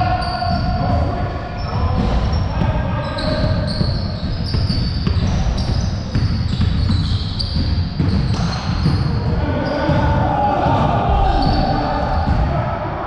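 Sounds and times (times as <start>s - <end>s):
high-pitched shoe squeaks: 1.6s - 9.9s
basketball bouncing: 1.7s - 12.6s.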